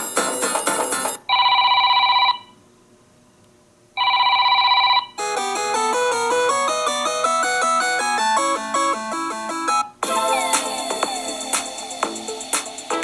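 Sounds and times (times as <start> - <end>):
musical phone ringtone: 0.0 - 2.4, 4.0 - 13.0
telephone bell ringtone trilling: 0.6 - 2.5, 4.0 - 6.1.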